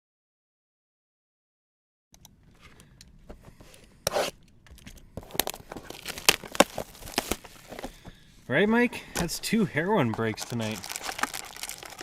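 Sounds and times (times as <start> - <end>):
plastic packaging crinkling and tearing: 5.2 - 8.0, 9.2 - 12.0.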